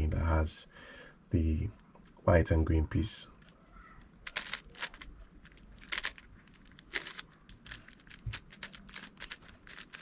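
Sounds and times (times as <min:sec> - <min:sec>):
puzzle cube layers clicking: 0:03.4 - 0:10.0.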